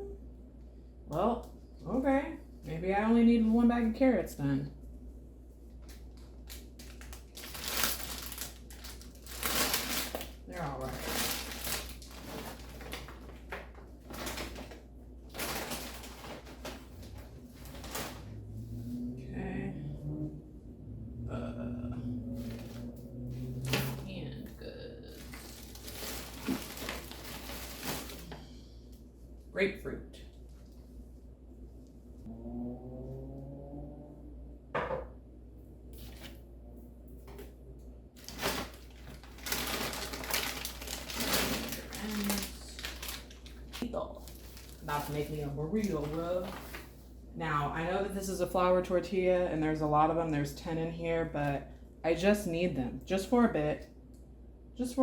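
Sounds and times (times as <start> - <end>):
low steady hum: 0.0 - 55.0
plastic grocery bags rustling: 5.7 - 18.6, 22.3 - 24.2, 25.1 - 28.5, 38.2 - 47.2
plastic packaging crinkling: 5.8 - 18.4, 25.1 - 28.4, 38.2 - 47.0.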